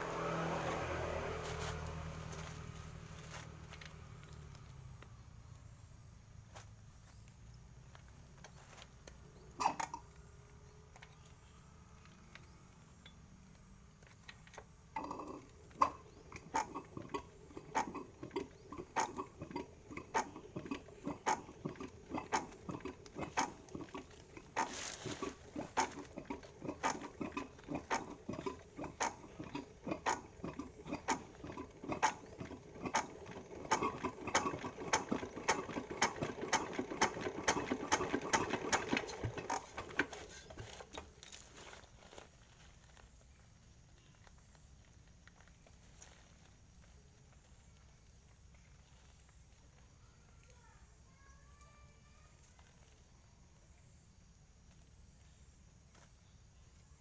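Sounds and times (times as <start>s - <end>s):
diesel engine knocking: 15.7s - 40.9s.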